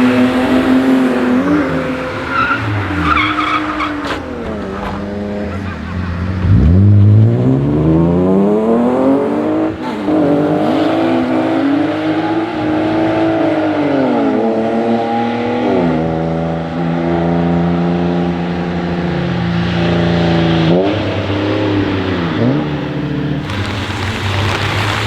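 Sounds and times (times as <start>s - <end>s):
car engine revving hard: 0.0s - 25.0s.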